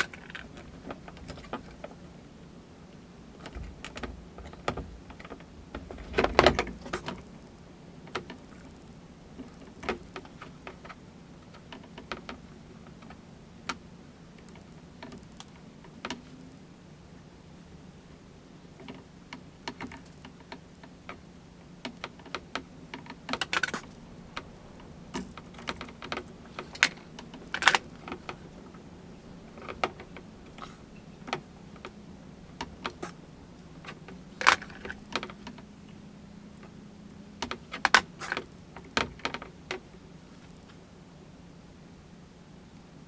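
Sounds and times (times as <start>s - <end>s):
faint low hum: 0.0s - 43.0s.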